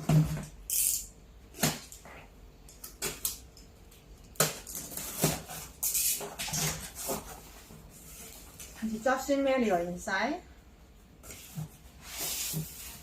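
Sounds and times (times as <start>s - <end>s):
cardboard packaging being handled: 4.5s - 9.0s, 11.2s - 13.0s.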